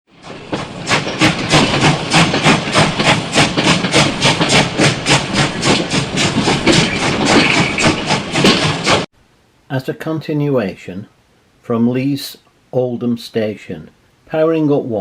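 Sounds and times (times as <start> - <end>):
steam locomotive chuffing: 0.1 - 9.1.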